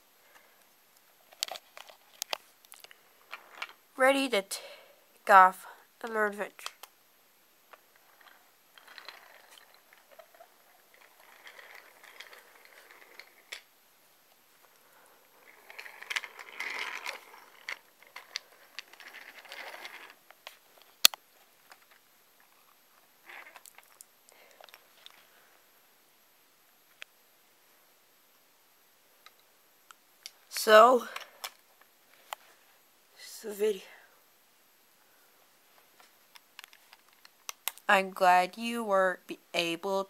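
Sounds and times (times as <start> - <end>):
toy train rattling on wooden track: 7.9 - 13.7, 15.4 - 21.0.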